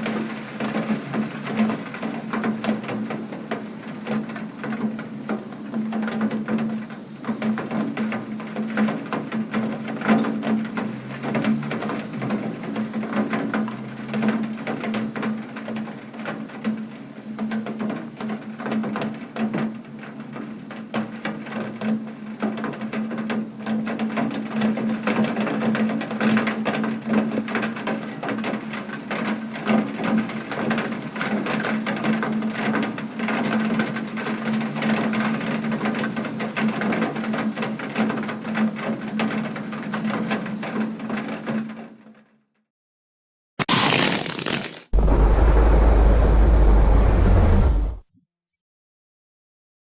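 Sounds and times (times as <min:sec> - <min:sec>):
rain tapping on hard surface: 0:00.0 - 0:41.6
constant low hum: 0:44.9 - 0:48.0.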